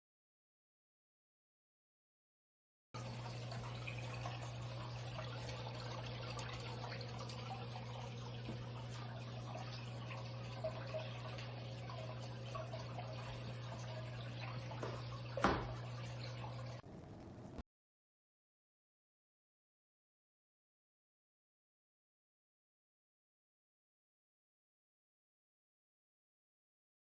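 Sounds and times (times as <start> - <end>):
aquarium water trickling: 3.0 - 17.6
circulation pump hum: 3.0 - 17.6.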